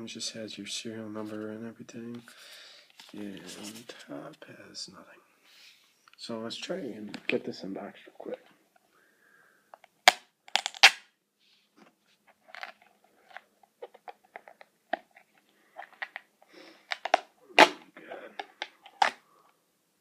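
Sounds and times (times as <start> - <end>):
plastic wrapping crinkling: 12.3 - 19.2.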